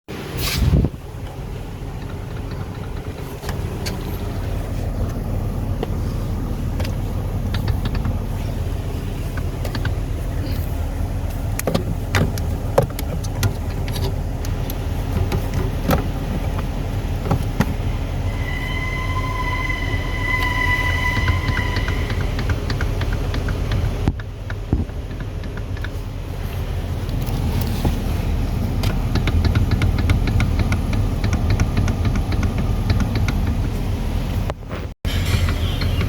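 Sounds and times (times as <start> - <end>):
steady high whine: 17.6 - 23.4.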